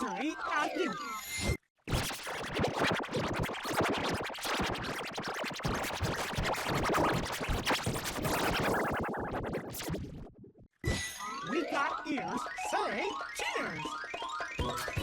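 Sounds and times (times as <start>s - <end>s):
stuttering electronic cartoon music: 7.9s - 10.0s, 10.9s - 15.0s.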